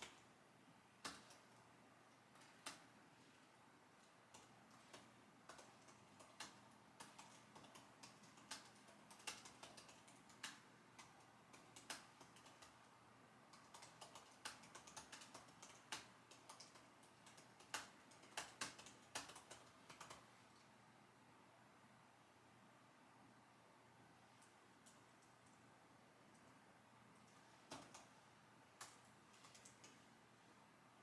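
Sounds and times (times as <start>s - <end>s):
computer keyboard typing: 1.0s - 1.6s, 4.0s - 20.3s, 27.6s - 28.2s, 28.8s - 30.0s.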